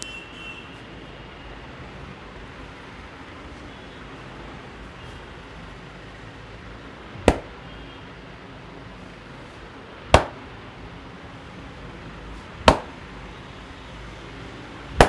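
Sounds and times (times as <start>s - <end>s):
hand slaps on head: 7.3s - 7.5s.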